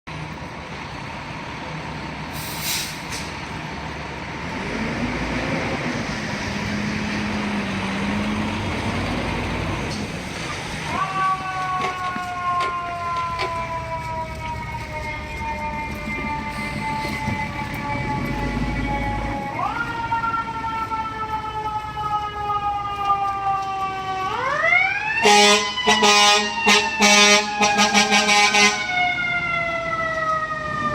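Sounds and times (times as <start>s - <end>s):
fire engine siren: 0.3s - 30.9s
air brake hiss: 2.3s - 3.4s, 16.5s - 17.3s
diesel engine running: 12.5s - 24.4s
air horn blast: 25.2s - 29.0s.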